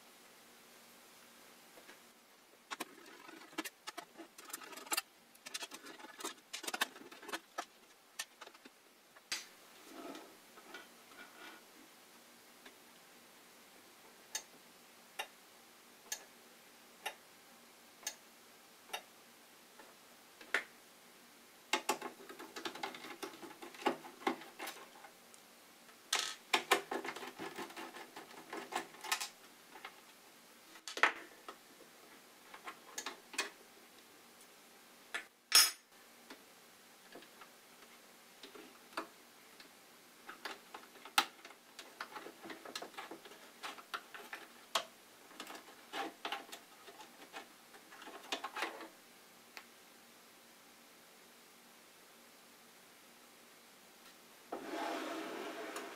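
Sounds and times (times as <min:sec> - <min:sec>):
small hard objects clattering: 0:02.7 - 0:08.7.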